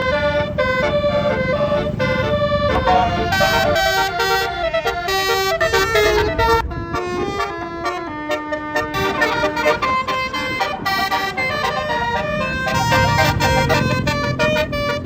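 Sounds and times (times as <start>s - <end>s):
multi-tone bus horn melody: 0.0s - 15.0s.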